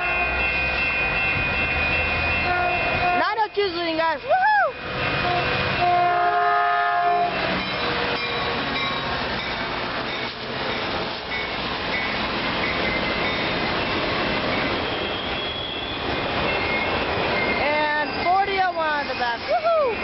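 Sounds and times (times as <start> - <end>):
train horn chord: 0.0 - 0.6, 2.4 - 3.5, 5.0 - 8.3
train rumbling past: 0.0 - 20.0.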